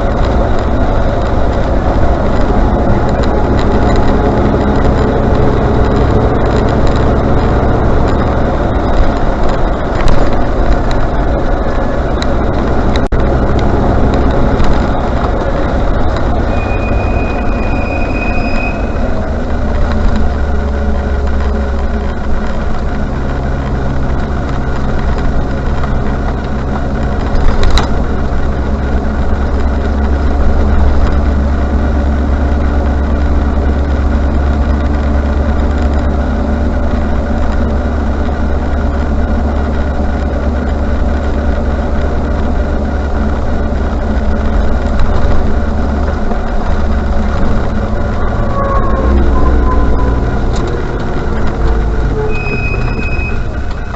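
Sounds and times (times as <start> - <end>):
car engine running: 0.0 - 53.9
road noise: 0.0 - 53.9
high-pitched brake squeal: 16.3 - 19.5, 47.8 - 53.9.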